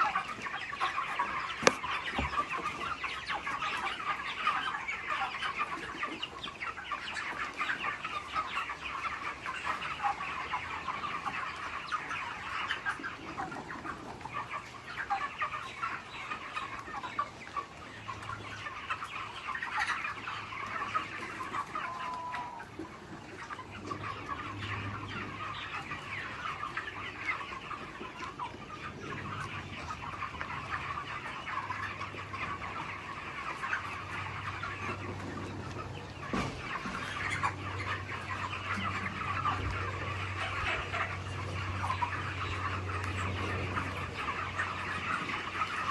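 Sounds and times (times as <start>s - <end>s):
chickens clucking: 0.0s - 45.9s.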